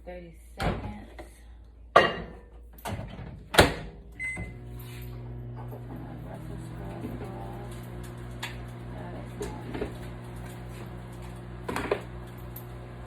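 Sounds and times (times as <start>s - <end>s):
microwave oven humming: 4.0s - 13.0s.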